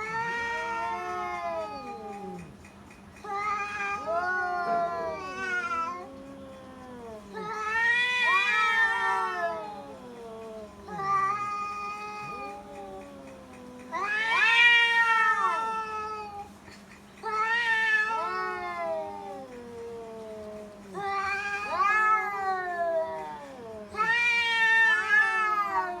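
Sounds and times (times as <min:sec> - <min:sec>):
cats yowling: 0:00.0 - 0:26.0.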